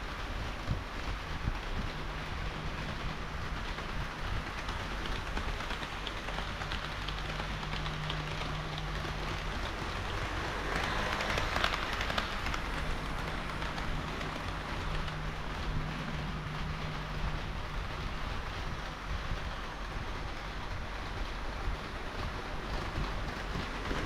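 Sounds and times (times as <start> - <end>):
model train wheels rolling: 0.0 - 24.0
wheels clicking over rail joints: 0.0 - 24.0
low motor hum: 0.1 - 24.0.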